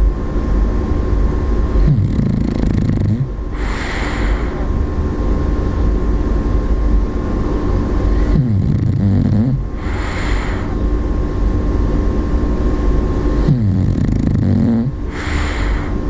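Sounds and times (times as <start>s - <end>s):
steady low rumble: 0.0s - 16.0s
dog snoring: 1.8s - 4.7s, 8.1s - 10.8s, 13.4s - 16.0s
hissing breath: 3.5s - 4.8s, 9.1s - 10.9s, 15.0s - 16.0s.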